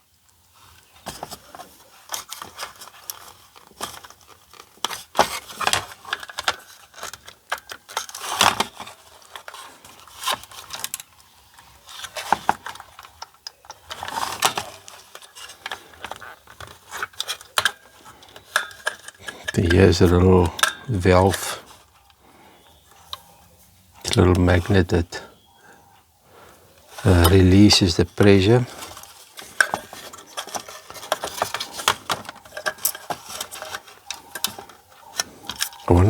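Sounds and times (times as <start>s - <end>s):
plastic parts clicking and tapping: 1.1s - 22.2s, 26.8s - 36.0s.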